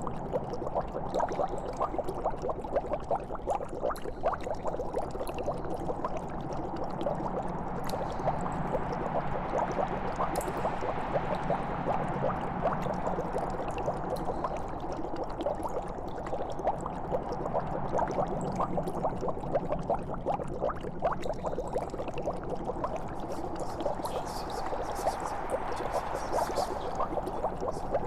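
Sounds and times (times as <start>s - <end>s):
liquid bubbling and gurgling: 0.0s - 28.0s
low steady hum: 0.0s - 28.0s.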